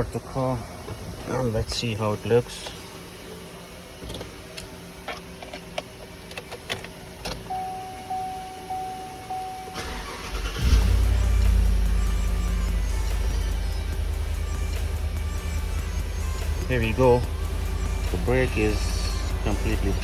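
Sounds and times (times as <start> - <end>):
car engine cranking and running: 2.3 - 20.0
repeating electronic chime: 7.5 - 16.7.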